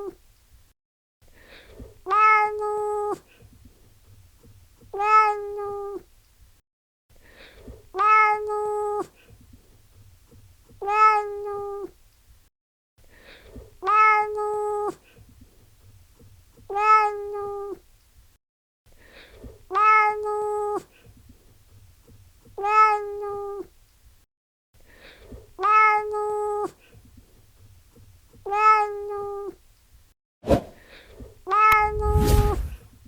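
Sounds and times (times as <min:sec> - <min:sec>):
cat meowing: 0:02.1 - 0:03.2, 0:05.0 - 0:06.0, 0:08.0 - 0:09.0, 0:10.8 - 0:11.9, 0:13.8 - 0:14.9, 0:16.7 - 0:17.8, 0:19.7 - 0:20.8, 0:22.6 - 0:23.6, 0:25.6 - 0:26.7, 0:28.4 - 0:29.6, 0:31.5 - 0:32.8.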